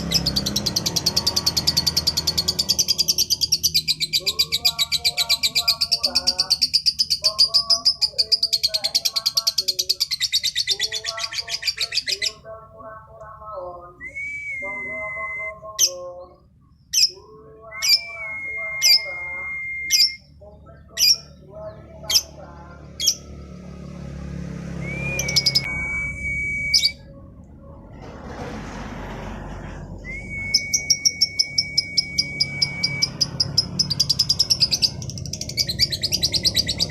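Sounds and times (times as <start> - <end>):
lovebird singing: 0.0 - 23.9, 24.7 - 27.3, 30.0 - 36.9
lower twittering: 23.0 - 27.5, 29.4 - 36.9.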